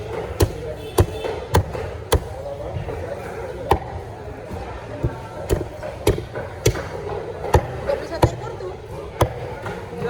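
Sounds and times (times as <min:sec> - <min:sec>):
background chatter: 0:00.0 - 0:10.0.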